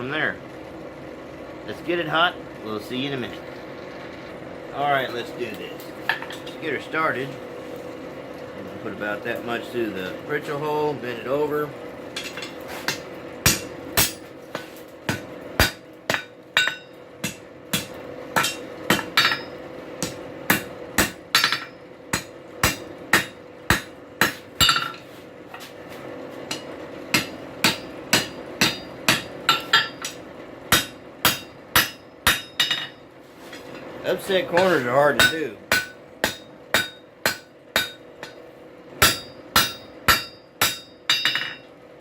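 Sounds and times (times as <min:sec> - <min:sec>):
steady hum: 0:00.0 - 0:42.0
hammer striking steel on anvil: 0:12.2 - 0:25.7, 0:26.5 - 0:33.0, 0:34.5 - 0:38.4, 0:39.0 - 0:41.7.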